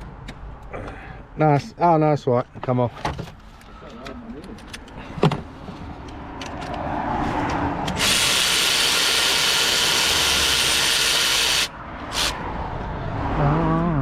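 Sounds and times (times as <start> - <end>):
power tool spinning: 8.0 - 12.4.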